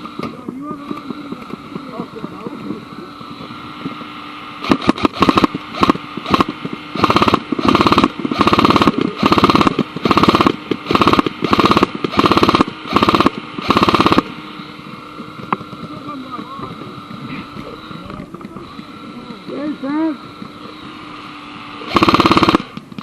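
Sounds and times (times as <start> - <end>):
airsoft gun firing bursts: 4.6 - 14.4, 21.8 - 23.0.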